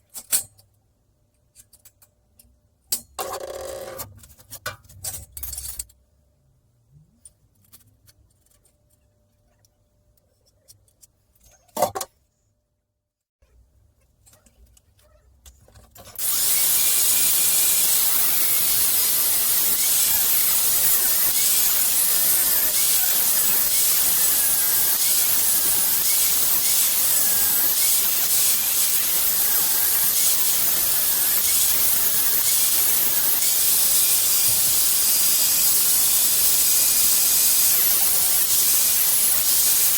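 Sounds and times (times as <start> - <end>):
power tool cutting steel: 16.2 - 39.9.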